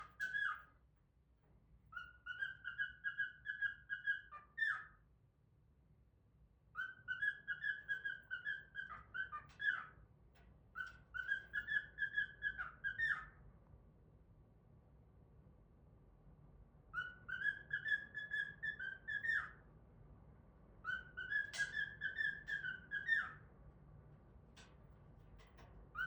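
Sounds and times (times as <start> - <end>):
cockatiel whistling: 0.0 - 0.7, 1.9 - 5.0, 6.8 - 10.0, 10.8 - 13.4, 16.9 - 19.6, 20.8 - 23.5.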